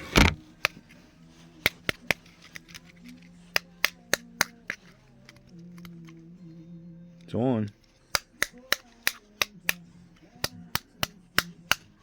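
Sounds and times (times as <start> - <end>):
taps and clicks on toy: 3.5 - 6.0, 8.1 - 9.8, 10.4 - 11.9.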